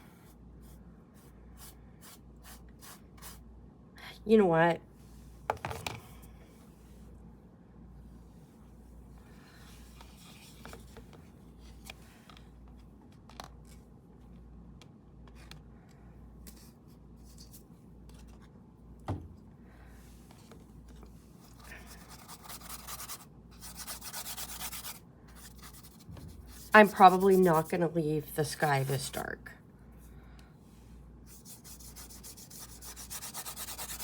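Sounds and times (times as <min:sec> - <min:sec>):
paintbrush scrubbing canvas: 0:21.5 - 0:27.8, 0:31.3 - 0:34.0.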